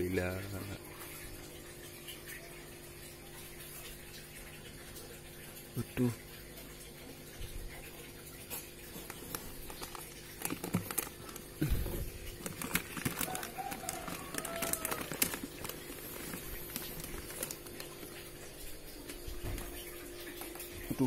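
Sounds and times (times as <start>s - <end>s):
rustling and crinkling handling: 8.5s - 21.0s.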